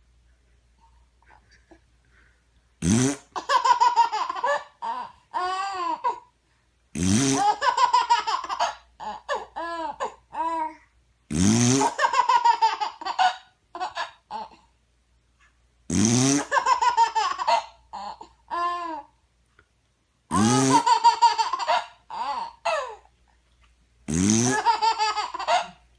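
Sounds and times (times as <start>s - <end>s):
fart noise rising in pitch: 2.8s - 3.3s, 7.0s - 7.5s, 11.3s - 11.9s, 15.9s - 16.5s, 20.3s - 20.8s, 24.1s - 24.6s
baby giggling: 3.2s - 6.3s, 7.3s - 10.6s, 11.8s - 14.6s, 16.4s - 19.1s, 20.3s - 23.1s, 24.3s - 25.9s.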